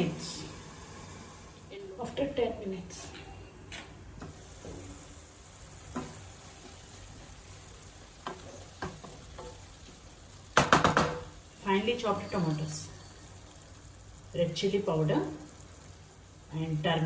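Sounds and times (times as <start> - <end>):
meat sizzling in a pan: 4.2 - 17.0.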